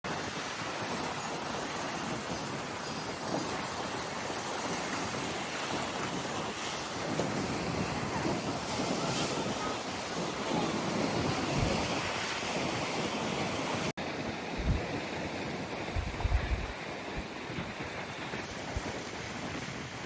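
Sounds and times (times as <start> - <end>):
waves breaking on shore: 0.1 - 20.0
wind buffeting microphone: 0.4 - 20.0.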